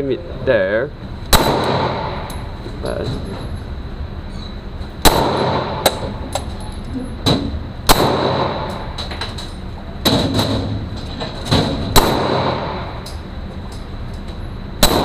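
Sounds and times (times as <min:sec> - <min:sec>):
pistol shots with echo: 0:01.3 - 0:02.4, 0:05.0 - 0:06.0, 0:07.9 - 0:09.0, 0:11.9 - 0:13.0, 0:14.8 - 0:15.0.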